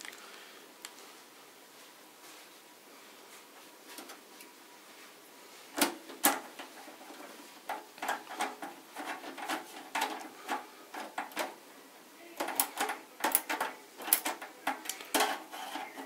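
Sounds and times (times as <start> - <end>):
computer hardware clicks and knocks: 5.8 - 11.6, 12.4 - 16.0.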